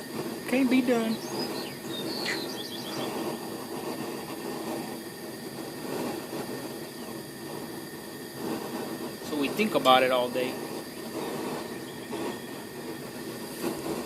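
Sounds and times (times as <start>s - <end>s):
steady rushing noise: 0.0s - 14.0s
high bird chirps: 1.0s - 3.2s.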